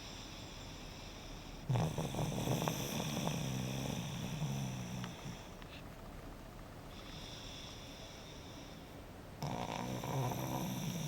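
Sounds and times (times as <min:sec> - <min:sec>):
pet snoring: 0:00.4 - 0:05.6, 0:09.4 - 0:11.0.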